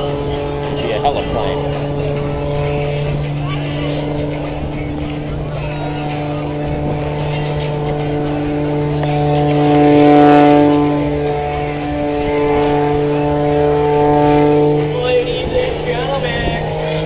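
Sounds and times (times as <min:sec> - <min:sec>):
propeller plane engine at high power: 0:00.0 - 0:17.0.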